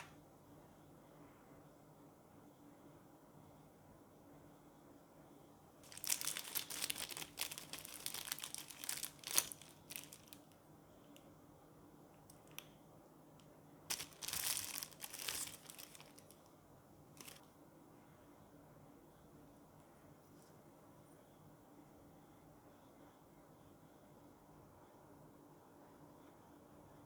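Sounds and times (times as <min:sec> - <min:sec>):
packaging crinkling: 0:05.8 - 0:10.6, 0:13.9 - 0:16.5, 0:17.2 - 0:17.4.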